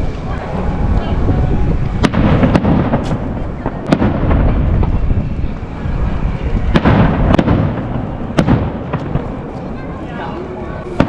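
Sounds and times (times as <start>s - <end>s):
low rumbling boom: 0.0s - 9.5s.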